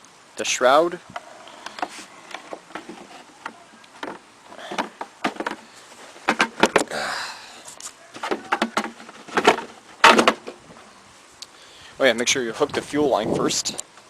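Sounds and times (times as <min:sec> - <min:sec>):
short scrape: 0:01.4 - 0:02.2.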